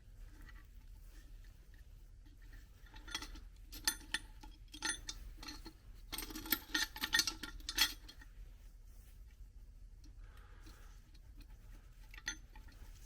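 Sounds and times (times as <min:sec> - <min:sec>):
metal parts clinking and rattling: 0:02.9 - 0:08.2, 0:12.1 - 0:12.8.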